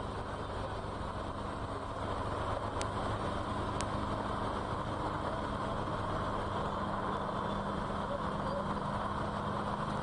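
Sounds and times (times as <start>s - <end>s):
traffic engines droning: 0.0s - 10.0s.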